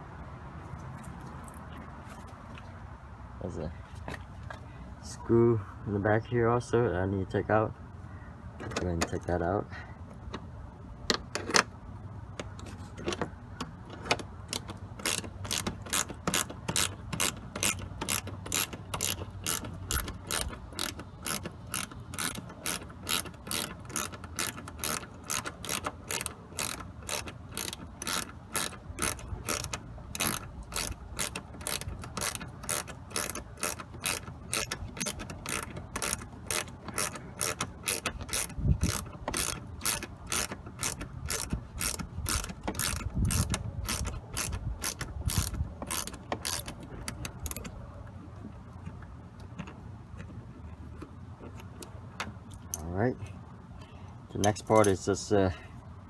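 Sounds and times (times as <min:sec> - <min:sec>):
ratchet clicking: 0:12.4 - 0:47.8.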